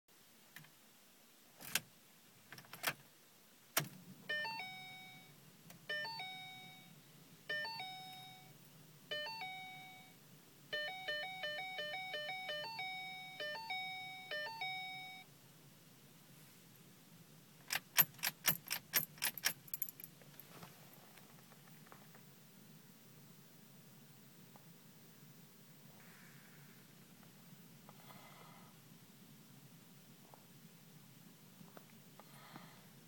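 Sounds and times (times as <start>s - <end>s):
two-note warning chime: 4.3s - 5.3s, 5.9s - 8.5s, 9.1s - 10.2s, 10.8s - 15.2s.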